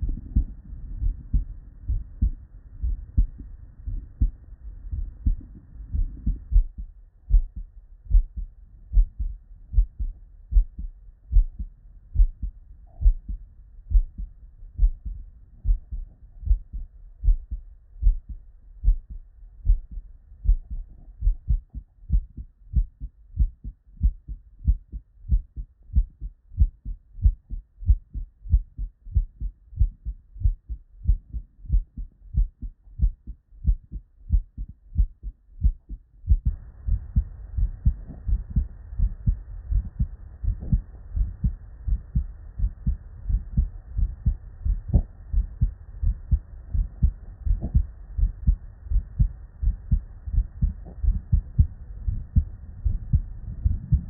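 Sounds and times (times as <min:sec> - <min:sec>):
heartbeat through stethoscope: 0:00.0 - 0:54.0
faint steady hiss: 0:27.2 - 0:54.0.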